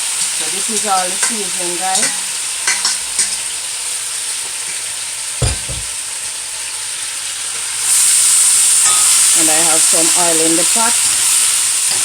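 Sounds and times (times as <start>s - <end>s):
food sizzling in hot oil: 0.0s - 12.0s
dull knock: 5.4s - 6.0s.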